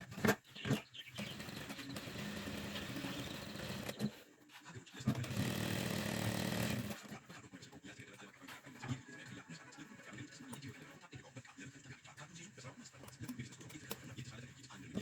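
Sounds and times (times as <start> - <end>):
sewing machine stitching: 0.0 - 4.2, 5.1 - 7.2
sewing machine clicks: 1.2 - 4.2, 5.1 - 7.1.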